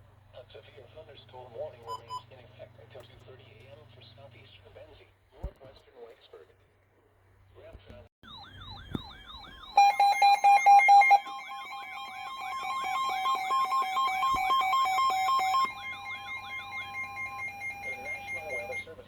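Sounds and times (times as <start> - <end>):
warbling siren tone: 8.2 - 18.9
two-tone alert signal: 8.3 - 19.0.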